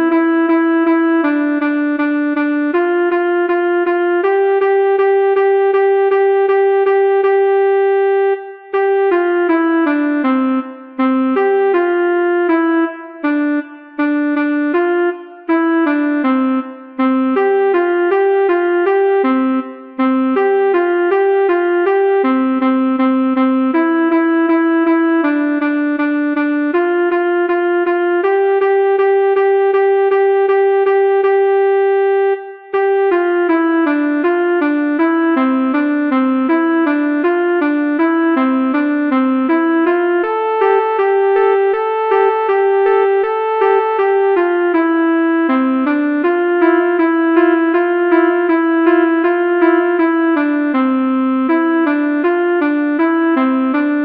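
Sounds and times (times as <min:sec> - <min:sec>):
melodica playing tune: 0:46.1 - 0:50.5.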